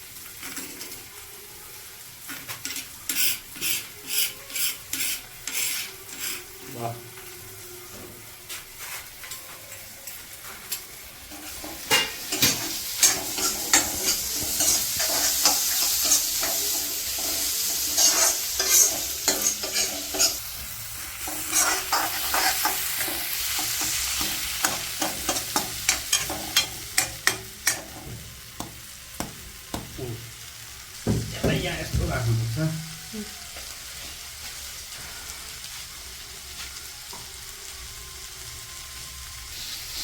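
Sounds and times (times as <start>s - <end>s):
masala sizzling in a pan: 0.0s - 40.0s
spoon scraping a pan: 2.3s - 6.6s, 10.7s - 20.4s, 21.2s - 28.1s.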